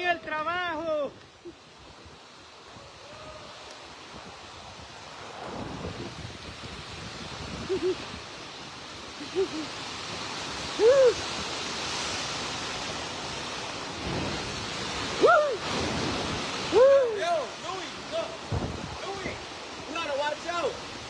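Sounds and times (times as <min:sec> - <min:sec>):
strong storm wind: 0:00.0 - 0:21.0
short vocal cries: 0:10.8 - 0:11.2.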